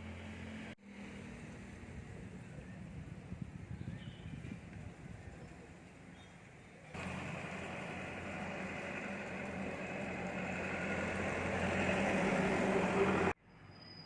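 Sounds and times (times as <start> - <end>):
vehicle engine running: 7.0 - 13.4.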